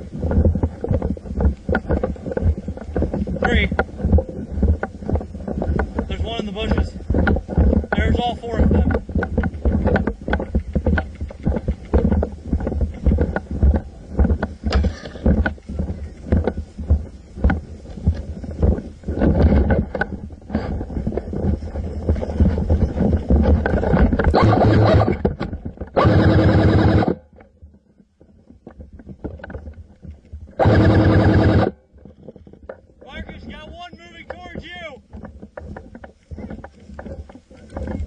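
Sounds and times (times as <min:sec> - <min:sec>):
footsteps: 0:00.0 - 0:38.0
microphone handling noise: 0:00.0 - 0:38.0
rustling and knocking: 0:00.0 - 0:38.0
wind rumble on microphone: 0:00.0 - 0:38.0
buzzing sound: 0:30.6 - 0:31.8.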